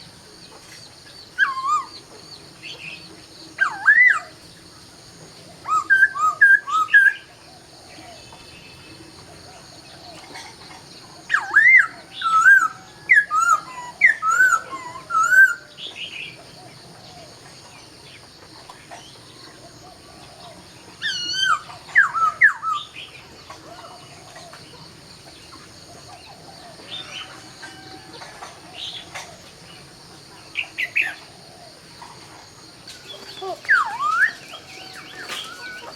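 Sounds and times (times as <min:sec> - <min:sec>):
bird singing whistled notes: 0:33.3 - 0:35.9.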